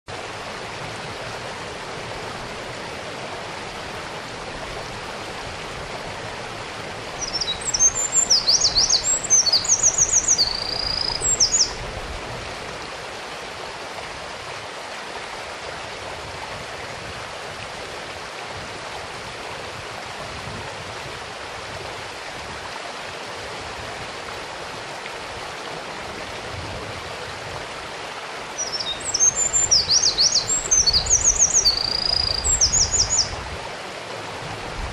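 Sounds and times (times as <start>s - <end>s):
mountain stream rushing: 0.1s - 34.9s
wren trilling song: 7.2s - 11.8s, 28.6s - 33.4s.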